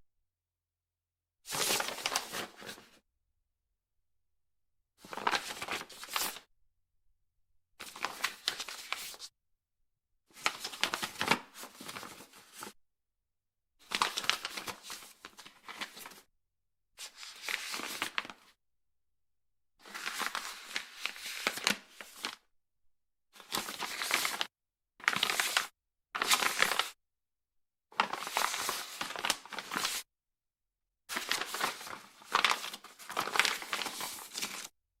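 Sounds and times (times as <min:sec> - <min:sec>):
paper pages turning: 0:01.5 - 0:02.9, 0:05.0 - 0:06.4, 0:07.8 - 0:09.3, 0:10.4 - 0:12.7, 0:13.9 - 0:16.2, 0:17.1 - 0:18.4, 0:19.9 - 0:22.4, 0:23.4 - 0:24.5, 0:25.1 - 0:26.9, 0:28.0 - 0:30.0, 0:31.1 - 0:34.7.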